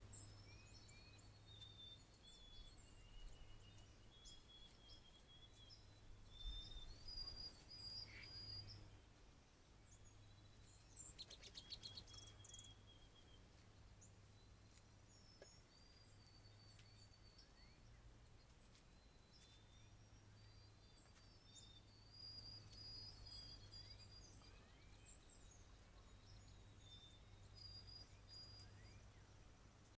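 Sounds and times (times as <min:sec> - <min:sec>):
songbirds whistling: 0:00.0 - 0:09.0, 0:09.9 - 0:18.1, 0:18.7 - 0:29.4
bird trill: 0:00.2 - 0:08.9.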